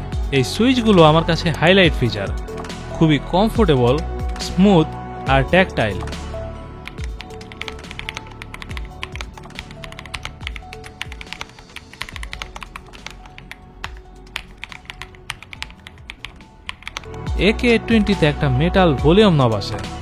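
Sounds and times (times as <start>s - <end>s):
background music: 0.0s - 20.0s
mechanical keyboard typing: 6.8s - 17.3s.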